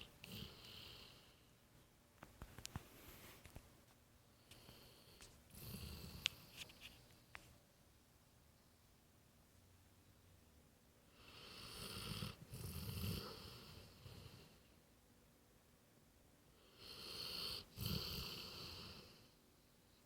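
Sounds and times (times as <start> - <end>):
dog snoring: 0.0 - 1.4, 4.6 - 6.6, 11.1 - 14.7, 16.6 - 19.4.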